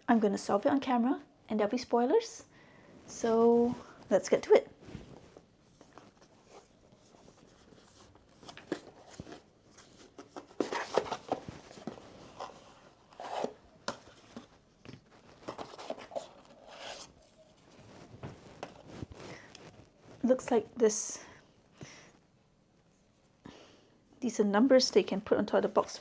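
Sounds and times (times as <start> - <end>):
hands handling puzzle box: 4.9 - 20.5.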